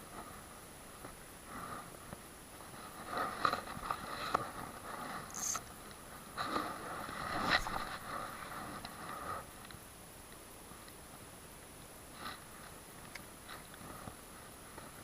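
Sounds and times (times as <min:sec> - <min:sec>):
fishing reel gear whir: 0:05.3 - 0:05.6.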